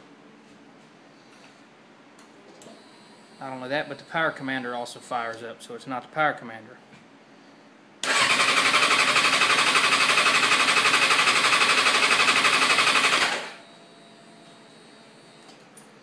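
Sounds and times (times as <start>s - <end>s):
motorcycle engine cranking: 8.0s - 13.5s.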